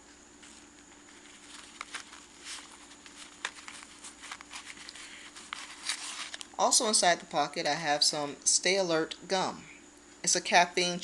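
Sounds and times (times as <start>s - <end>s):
faint steady hum: 0.0s - 11.0s
pouch rustling: 0.4s - 6.5s.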